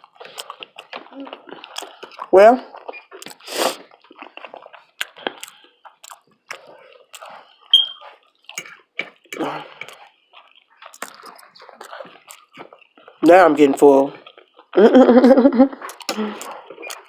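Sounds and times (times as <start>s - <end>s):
wet chewing and lip smacking: 0.0s - 14.8s, 15.7s - 17.0s
sharp mouth clicks: 3.2s - 3.8s, 5.0s - 7.8s, 10.8s - 12.7s, 15.8s - 17.0s
brief high squeak: 7.7s - 8.0s.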